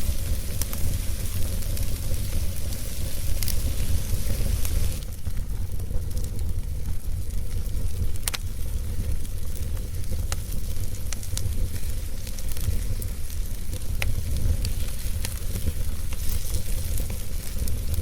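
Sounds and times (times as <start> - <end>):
fire crackling and popping: 0.0 - 18.0
low fire rumble: 0.0 - 18.0.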